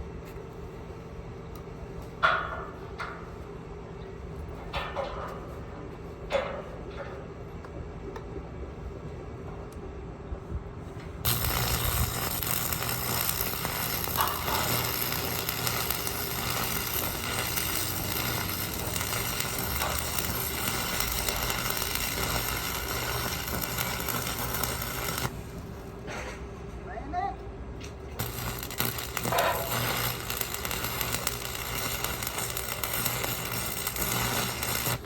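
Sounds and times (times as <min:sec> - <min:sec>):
arc welding crackle and buzz: 0:11.2 - 0:26.2, 0:27.8 - 0:35.0.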